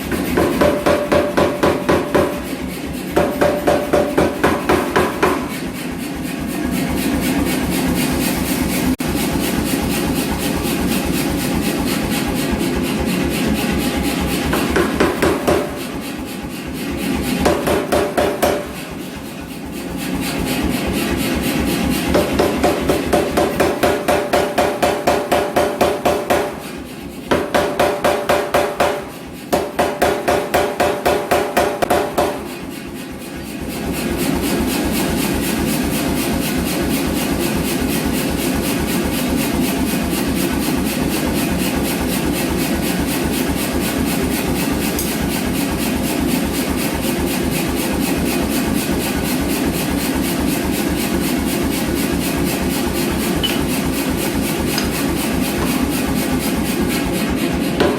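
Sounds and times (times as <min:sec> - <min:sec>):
power hammer striking steel: 0:00.0 - 0:06.5, 0:12.3 - 0:19.4, 0:21.5 - 0:32.8, 0:44.0 - 0:46.0, 0:52.6 - 0:57.9.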